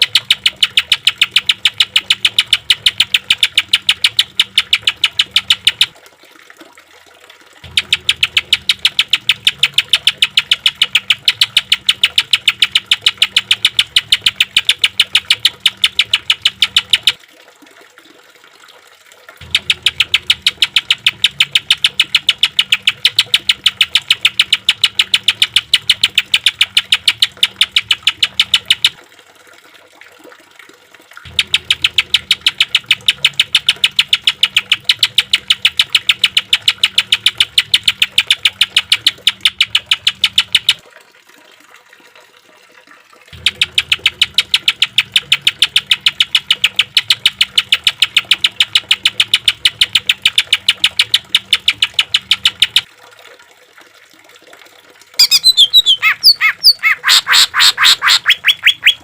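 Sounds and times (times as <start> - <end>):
bird rattling call notes: 0.0 - 5.9, 7.6 - 17.2, 19.4 - 29.0, 31.3 - 40.8, 55.2 - 59.0.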